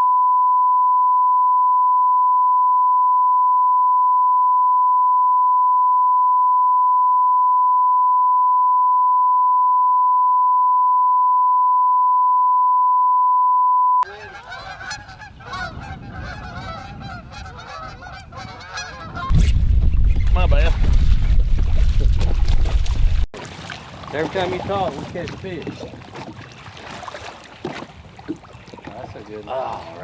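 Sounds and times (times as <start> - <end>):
flock of birds calling: 14.0 - 19.3.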